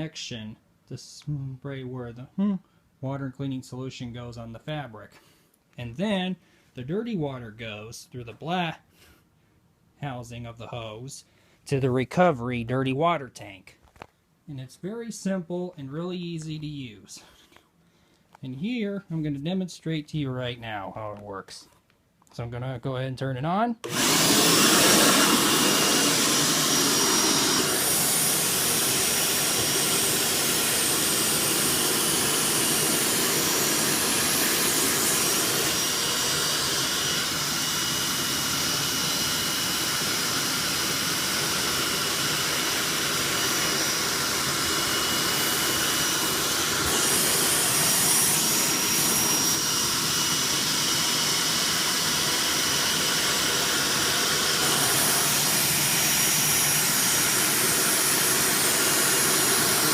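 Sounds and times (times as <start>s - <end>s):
carpet cleaner running: 23.8s - 59.9s.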